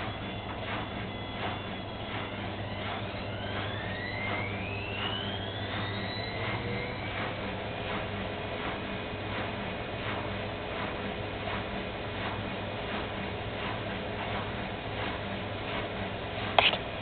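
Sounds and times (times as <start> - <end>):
rising motor whine: 0.0 - 7.6
washing machine motor hum: 0.0 - 17.0.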